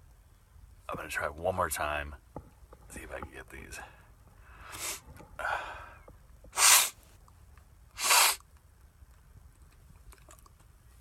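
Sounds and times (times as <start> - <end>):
breathy in-breath: 3.8 - 6.1
man sneezing: 6.6 - 7.0, 8.0 - 8.4.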